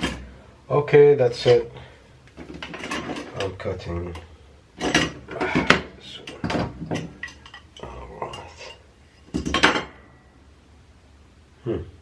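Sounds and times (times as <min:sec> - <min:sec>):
metal parts clicking and clattering: 0:02.4 - 0:03.5.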